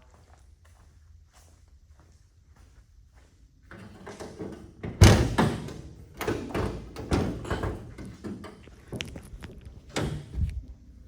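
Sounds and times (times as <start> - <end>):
knocks and rattles: 3.8 - 10.5.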